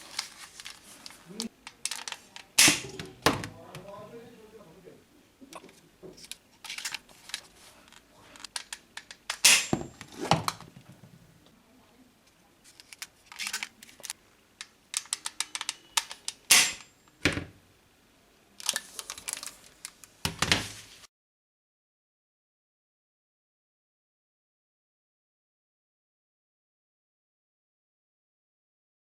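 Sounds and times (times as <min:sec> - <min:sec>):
plastic toys clicking and clattering: 0:00.0 - 0:03.2, 0:05.6 - 0:09.5, 0:12.6 - 0:16.9, 0:18.6 - 0:20.4.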